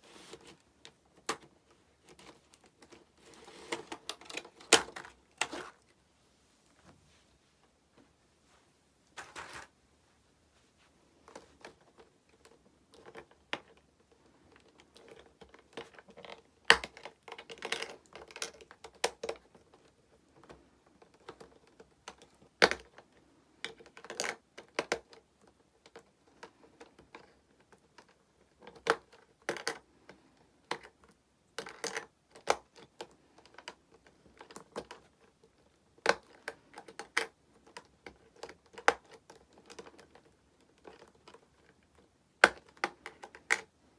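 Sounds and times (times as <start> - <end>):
plastic stones clicking and clacking: 30.6 - 43.7.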